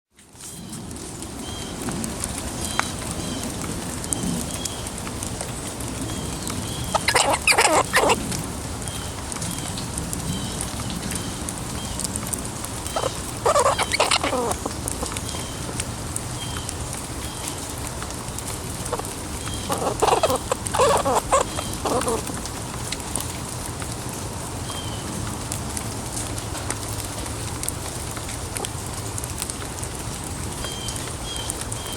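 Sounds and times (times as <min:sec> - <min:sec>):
rain hissing: 0:00.2 - 0:31.9
squirrel squeaking: 0:06.6 - 0:08.2, 0:12.8 - 0:15.7, 0:18.5 - 0:22.5.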